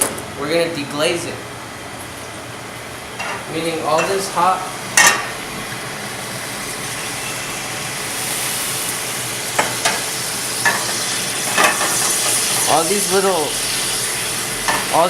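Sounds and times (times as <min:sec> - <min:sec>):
wine sizzling in a hot pan: 0:03.2 - 0:15.0.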